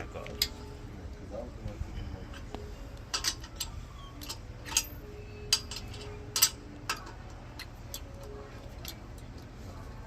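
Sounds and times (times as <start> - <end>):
sharp metallic clicks and clinks: 3.1 - 9.4.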